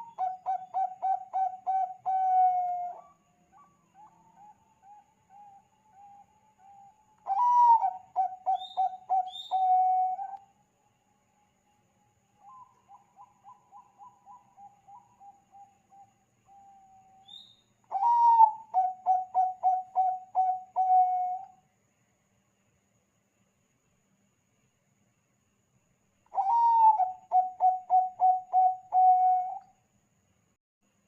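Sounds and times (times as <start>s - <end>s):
doves cooing: 0.0s - 6.1s, 6.7s - 10.4s, 17.9s - 21.4s, 26.4s - 29.6s
faint high bird chirps: 0.0s - 22.8s, 24.6s - 31.0s.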